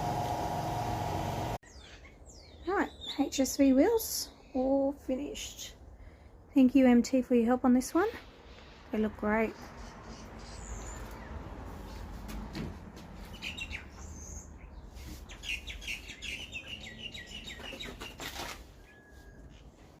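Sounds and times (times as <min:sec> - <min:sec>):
birds chirping: 0:08.1 - 0:12.2, 0:13.2 - 0:19.8.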